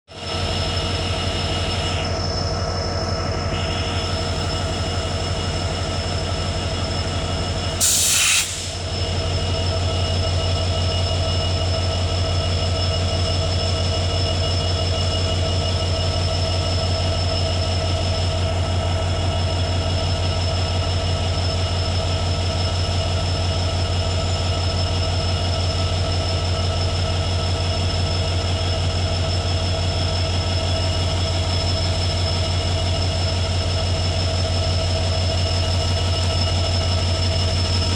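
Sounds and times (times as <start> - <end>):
diesel locomotive engine drone: 0.1 - 37.9
short loud hiss: 7.8 - 8.8
high whine: 28.8 - 37.9.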